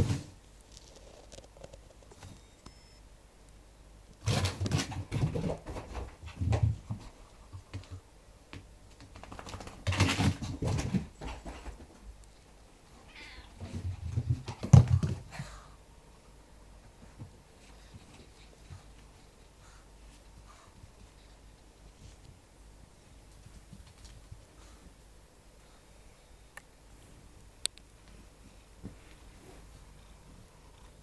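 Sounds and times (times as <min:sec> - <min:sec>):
cat making sounds: 0:13.0 - 0:13.7.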